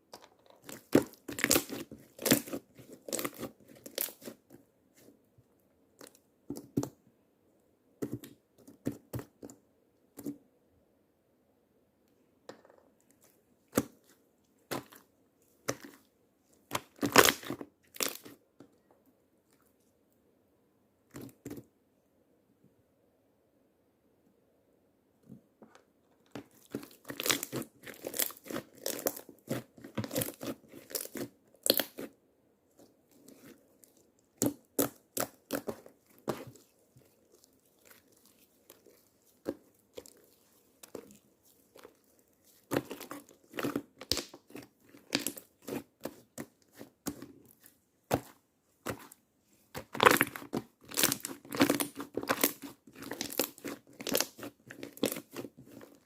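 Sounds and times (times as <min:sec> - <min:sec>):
slime squished with crackling pops: 0:00.6 - 0:04.4, 0:26.6 - 0:32.1, 0:48.1 - 0:56.0.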